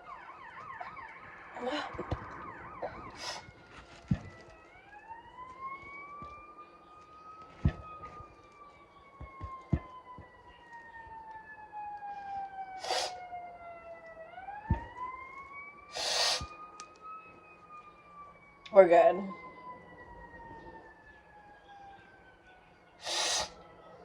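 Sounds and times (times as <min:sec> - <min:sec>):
wailing siren: 0:00.0 - 0:24.0
sharp thumps: 0:07.6 - 0:08.2, 0:09.2 - 0:10.3, 0:14.6 - 0:15.0
short hissing bursts: 0:16.0 - 0:16.5, 0:23.0 - 0:23.5.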